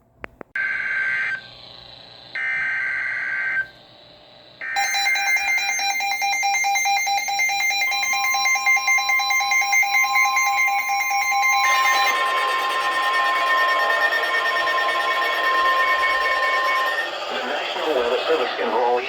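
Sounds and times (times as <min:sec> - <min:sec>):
steady warning alarm tone: 0:00.6 - 0:03.9, 0:04.6 - 0:19.0
rapidly pulsing alarm beep: 0:04.6 - 0:19.0
warbling data burst screech: 0:10.5 - 0:19.0.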